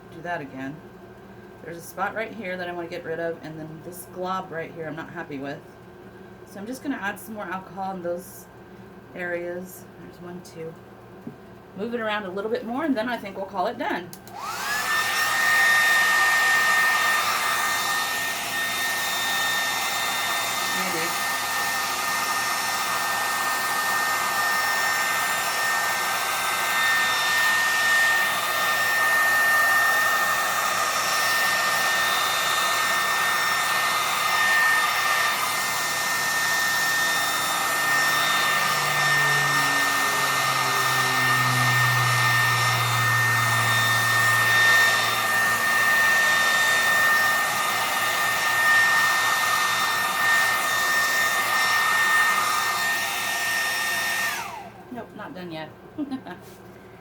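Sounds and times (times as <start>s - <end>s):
hair dryer running: 11.2s - 56.6s.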